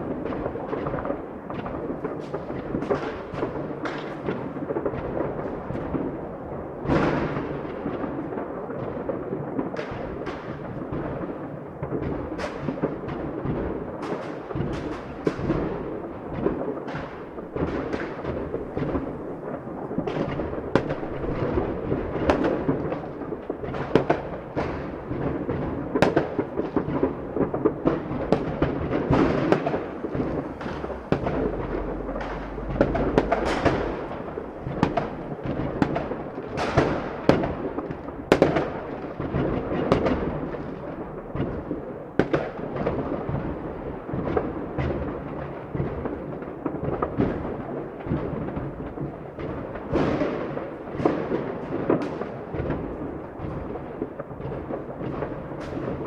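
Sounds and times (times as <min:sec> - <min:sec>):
fireworks bangs and crackling: 0:00.0 - 0:56.0
rumbling din of explosions: 0:14.6 - 0:45.1.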